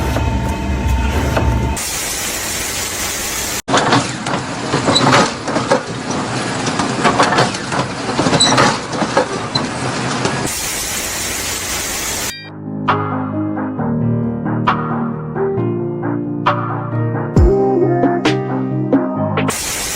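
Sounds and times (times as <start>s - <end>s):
machinery hissing: 0.0s - 3.6s, 10.4s - 12.3s, 19.5s - 19.9s.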